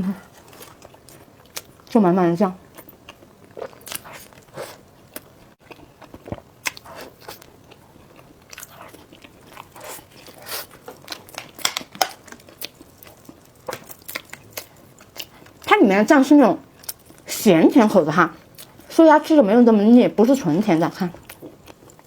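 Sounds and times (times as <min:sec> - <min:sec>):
person chewing bread: 0:02.7 - 0:15.7.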